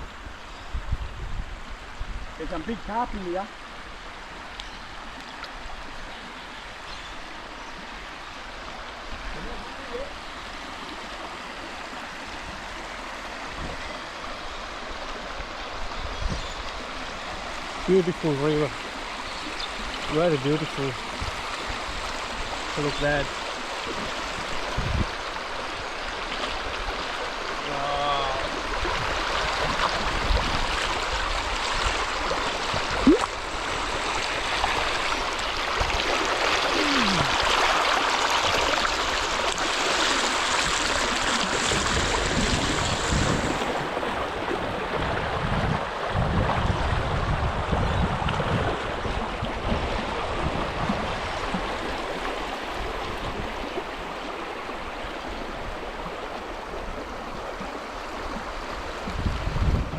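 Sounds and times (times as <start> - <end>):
wind on microphone: 0.0 - 2.8, 13.4 - 37.7, 38.3 - 54.1, 55.3 - 59.9
river water flowing: 0.0 - 59.9.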